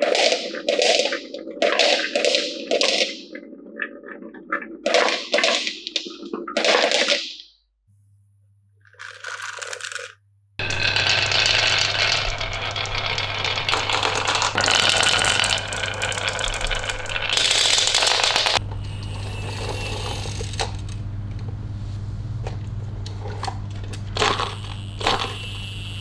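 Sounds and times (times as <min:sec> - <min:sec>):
steady low hum: 0:07.9 - 0:26.0
marbles rattling on wooden run: 0:08.9 - 0:18.6, 0:24.2 - 0:25.4.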